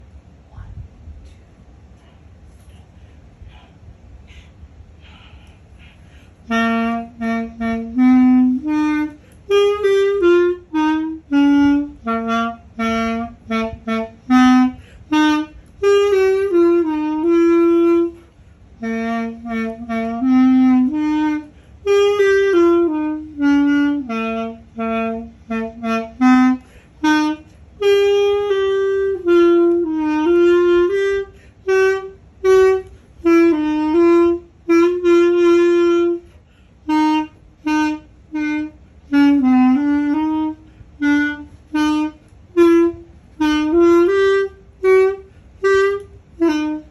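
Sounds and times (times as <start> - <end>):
player breathing: 2.1 - 6.5, 26.6 - 27.0
clarinet melody: 6.2 - 46.9.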